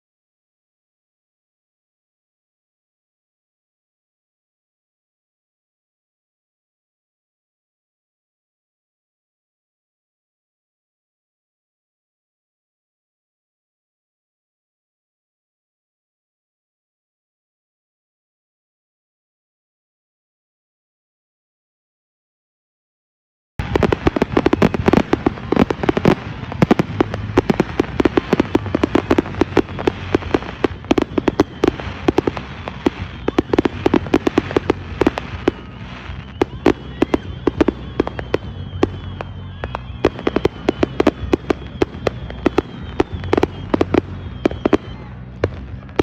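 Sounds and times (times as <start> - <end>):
faint high whistle: 23.6 - 46.0
fireworks popping and banging: 23.6 - 46.0.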